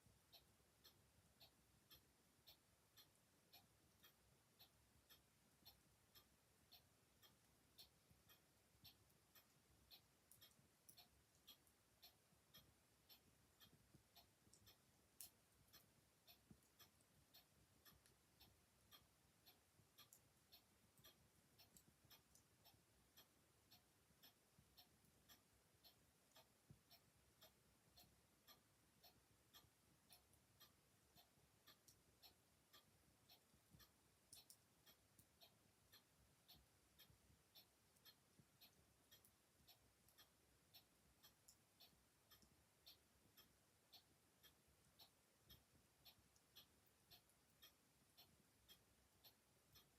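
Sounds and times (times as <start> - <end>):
mechanical clock ticking: 0.0 - 49.9.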